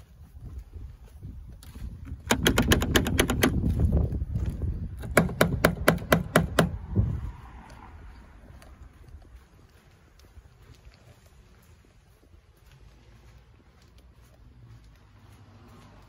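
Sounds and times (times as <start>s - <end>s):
sharp clicks: 2.1s - 3.9s
low rumble: 6.7s - 10.2s.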